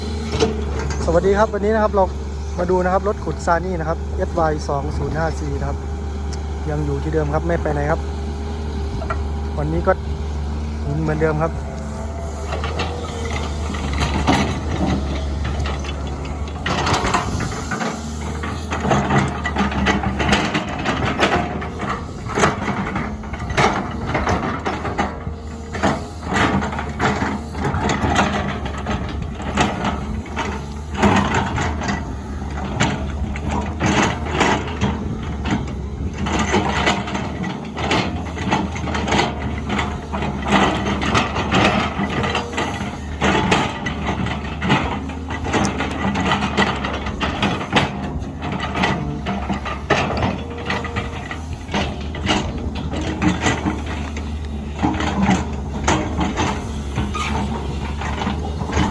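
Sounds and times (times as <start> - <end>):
diesel engine running: 0.0 - 58.9.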